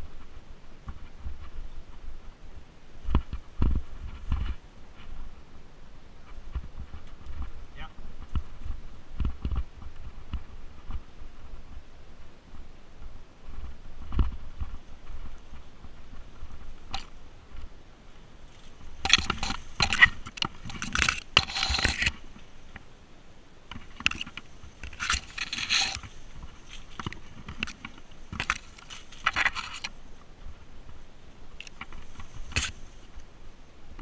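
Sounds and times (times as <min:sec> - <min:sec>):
bike rattling: 0:13.0 - 0:17.7, 0:18.4 - 0:22.9, 0:23.7 - 0:30.6, 0:31.5 - 0:33.2
tyres crunching on loose stones: 0:18.4 - 0:22.9, 0:23.7 - 0:30.0.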